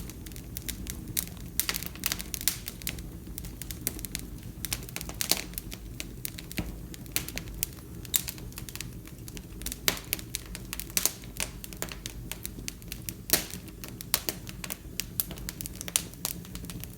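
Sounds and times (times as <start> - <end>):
wood fire crackling: 0.0 - 16.9.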